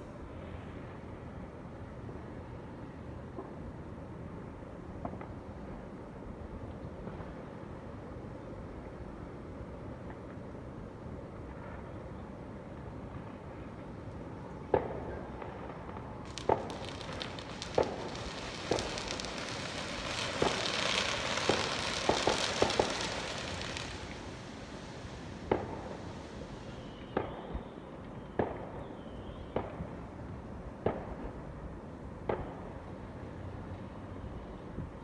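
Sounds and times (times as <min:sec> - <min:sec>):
fireworks bangs: 0:15.9 - 0:27.4
fireworks crackling: 0:16.0 - 0:27.2.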